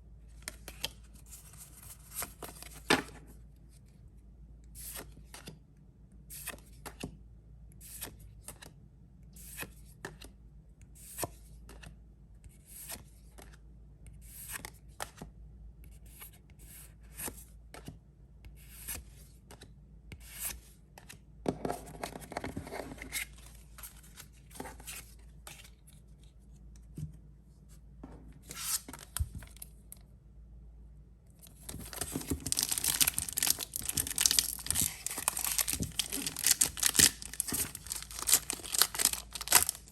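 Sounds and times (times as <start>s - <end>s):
foil wrapper tearing and crinkling: 31.8s - 39.9s.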